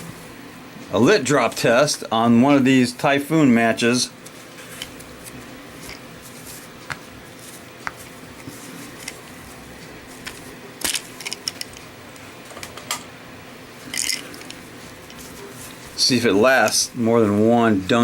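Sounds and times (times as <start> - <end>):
faint steady hum: 0.0 - 18.0
matches rustling and scraping: 4.2 - 13.0, 13.8 - 17.4.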